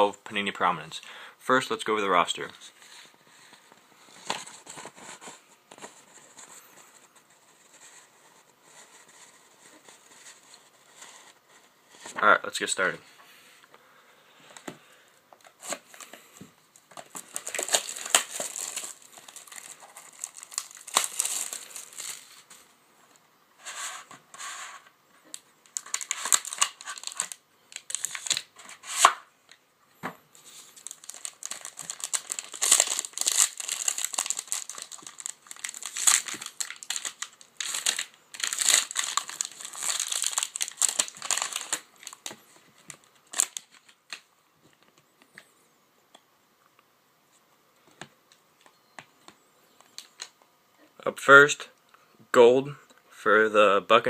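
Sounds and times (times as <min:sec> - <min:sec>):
plastic wrapping tearing and crumpling: 0:17.0 - 0:22.4, 0:25.3 - 0:29.2, 0:30.4 - 0:44.2.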